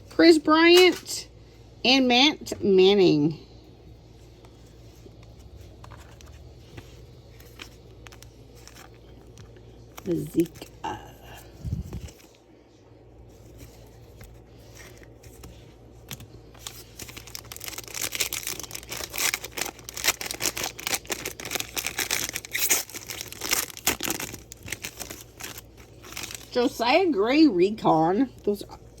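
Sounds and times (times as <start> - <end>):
foil wrapper tearing and crinkling: 7.5 - 9.4, 14.7 - 26.8.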